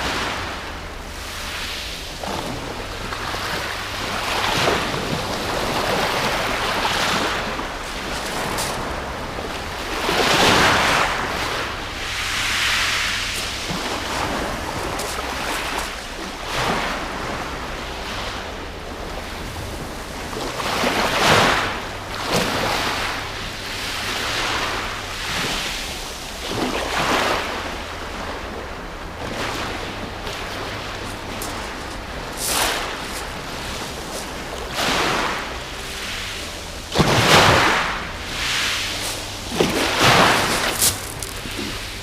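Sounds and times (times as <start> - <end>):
waves breaking on shingle: 2.2 - 9.0, 9.9 - 17.2, 31.0 - 36.3, 36.9 - 42.0.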